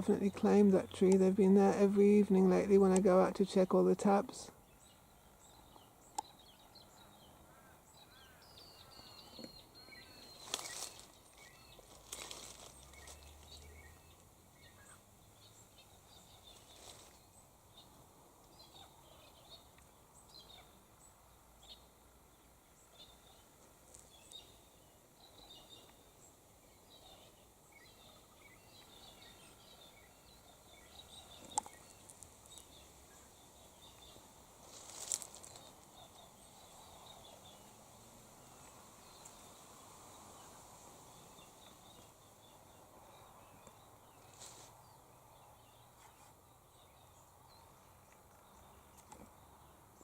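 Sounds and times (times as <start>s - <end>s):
bird chirps: 8.0s - 17.0s
crackles: 10.4s - 14.3s, 31.2s - 32.8s, 34.0s - 36.5s.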